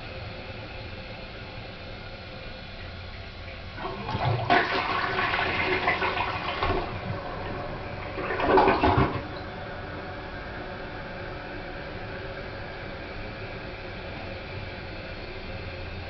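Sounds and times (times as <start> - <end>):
toilet flushing: 2.6 - 14.7.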